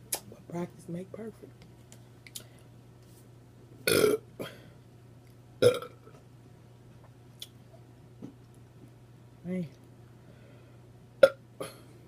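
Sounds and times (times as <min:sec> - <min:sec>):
woman burping: 0:03.9 - 0:04.6, 0:05.6 - 0:06.0, 0:11.2 - 0:11.9.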